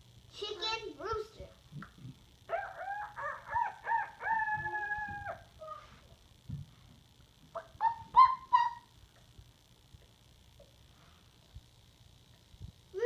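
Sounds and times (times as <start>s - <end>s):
person imitating a chicken: 2.0s - 6.0s.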